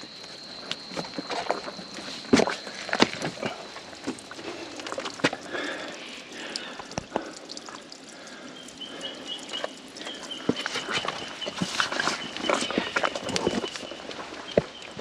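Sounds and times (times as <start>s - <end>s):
footsteps on stone: 0.6s - 5.5s, 10.0s - 15.0s.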